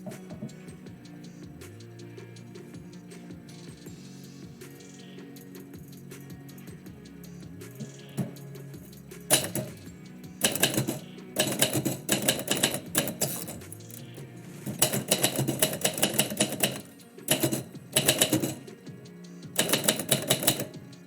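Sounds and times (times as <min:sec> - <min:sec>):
background music with low tones: 0:00.0 - 0:21.0
typewriter keys striking: 0:08.2 - 0:08.4, 0:09.3 - 0:18.8, 0:19.6 - 0:20.8.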